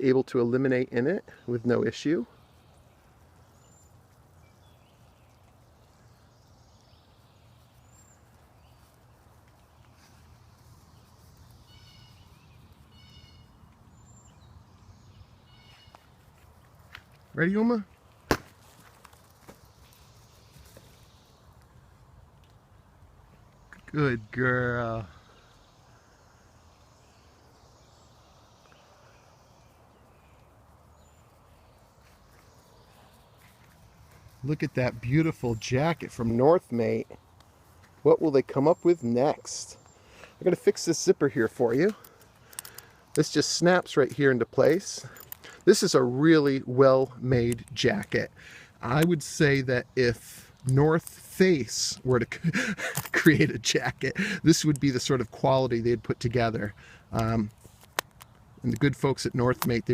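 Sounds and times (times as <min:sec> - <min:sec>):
faint high chirps: 0:09.9 - 0:16.1.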